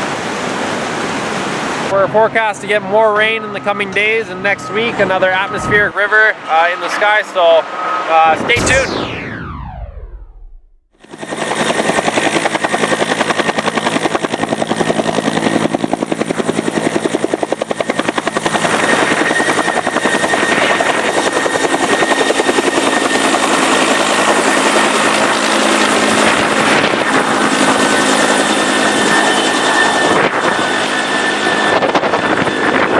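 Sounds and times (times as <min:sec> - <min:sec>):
helicopter rotor chopping: 0:08.6 - 0:10.8
helicopter engine whine: 0:08.6 - 0:32.7.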